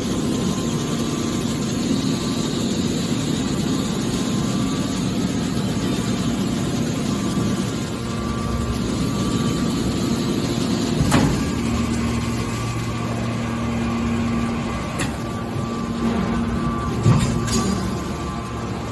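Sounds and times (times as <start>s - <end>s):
baler machine hum: 0.0s - 18.9s.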